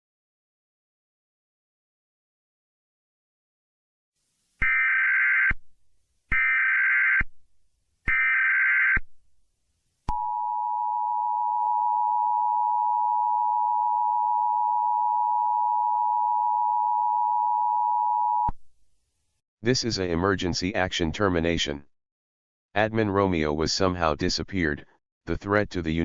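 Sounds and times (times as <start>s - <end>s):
steady attention tone: 10.1s - 18.5s.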